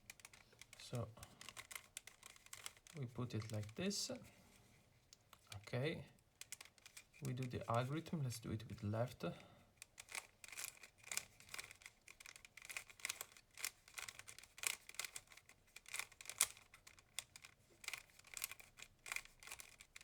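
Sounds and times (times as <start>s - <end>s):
puzzle cube clicking and rattling: 0.0s - 4.2s, 5.3s - 8.0s, 9.7s - 20.0s.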